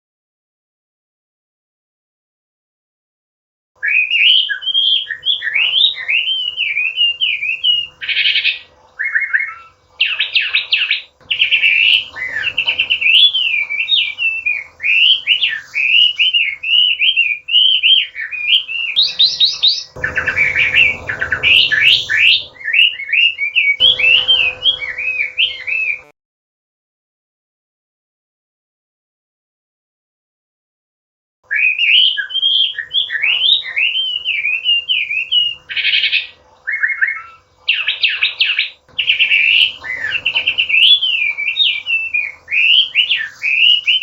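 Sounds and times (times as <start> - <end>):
bird singing whistled phrases: 3.8 - 26.1, 31.5 - 44.0.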